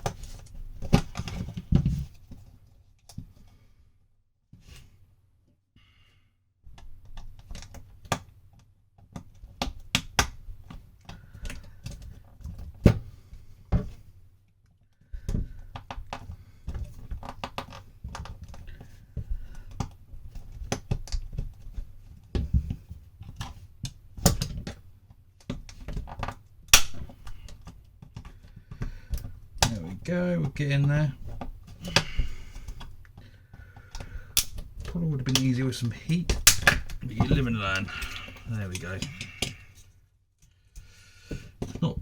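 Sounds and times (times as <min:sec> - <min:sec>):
loud plastic snap: 0:26.7 - 0:27.3, 0:34.4 - 0:34.6, 0:36.3 - 0:37.0.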